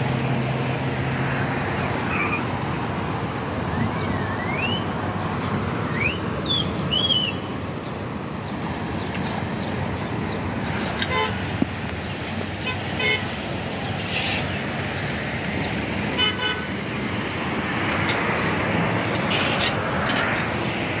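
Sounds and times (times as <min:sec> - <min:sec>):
seaside ambience rushing: 0:00.0 - 0:06.6.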